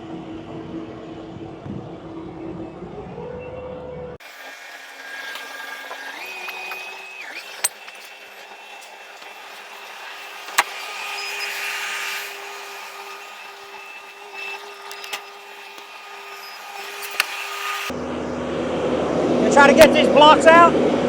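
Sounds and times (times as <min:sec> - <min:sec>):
sharp metallic clanks: 0:04.9 - 0:17.6
diesel engine running: 0:12.3 - 0:21.0.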